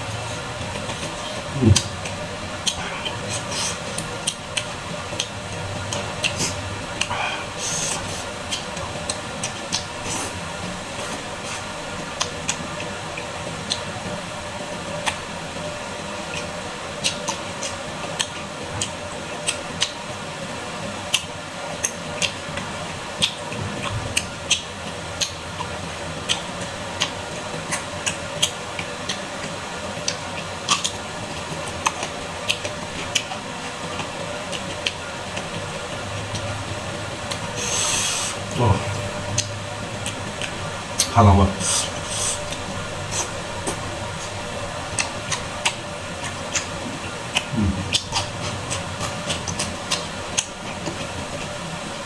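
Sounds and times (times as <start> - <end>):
faint steady hum: 0.0 - 52.0
mouth clicks and smacks: 0.7 - 7.2, 37.3 - 44.3, 44.9 - 51.1
wet squishy chewing: 30.0 - 51.6.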